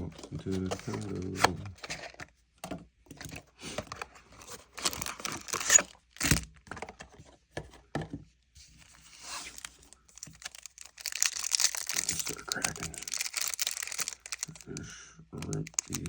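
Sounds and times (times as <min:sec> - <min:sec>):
packaging crinkling and tearing: 0:04.0 - 0:06.5, 0:08.8 - 0:16.0.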